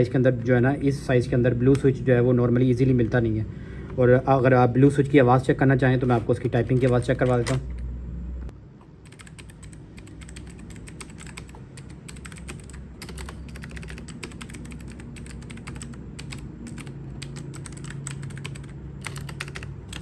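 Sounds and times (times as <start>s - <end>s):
clicky mechanical keyboard typing: 6.2s - 7.8s, 9.0s - 20.0s.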